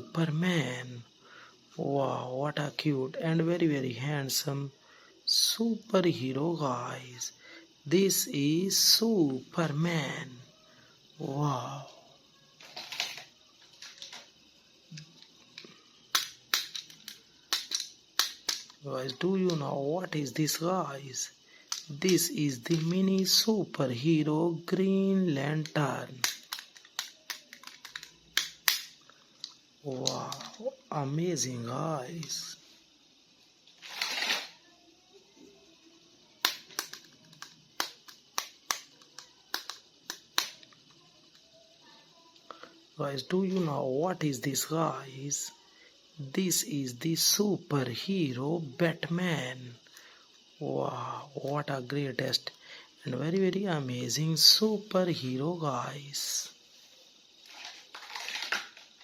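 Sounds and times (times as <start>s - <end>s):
plastic packaging clicking and crackling: 26.2s - 29.0s, 57.5s - 59.0s
hard plastic clicks and taps: 36.4s - 40.6s.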